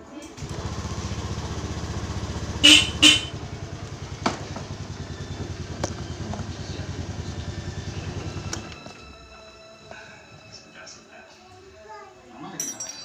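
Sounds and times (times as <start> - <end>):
motorcycle engine idling: 0.4 - 9.1
short horn beep: 2.5 - 3.7.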